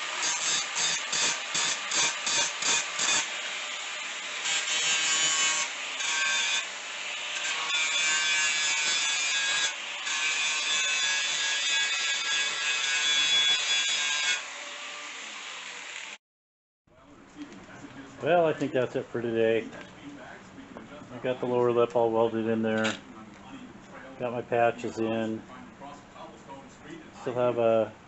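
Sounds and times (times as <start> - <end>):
rasping with metallic ringing: 0.2 - 3.4.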